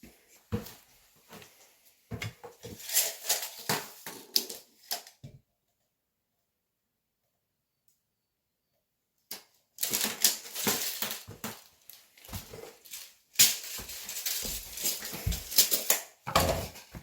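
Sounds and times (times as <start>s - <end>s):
tapping and rustling handling noise: 9.3s - 17.0s.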